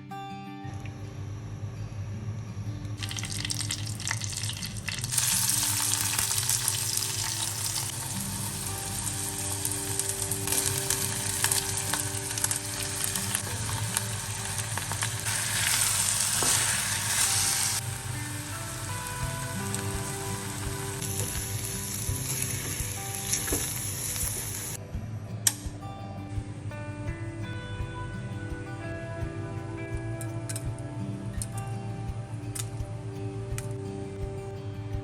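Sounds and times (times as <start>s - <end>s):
food sizzling in hot oil: 3.0s - 24.8s.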